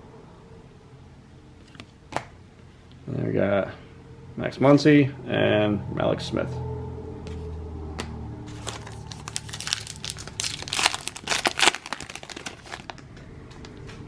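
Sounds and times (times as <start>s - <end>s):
plastic wrapper tearing and crinkling: 8.5s - 13.0s.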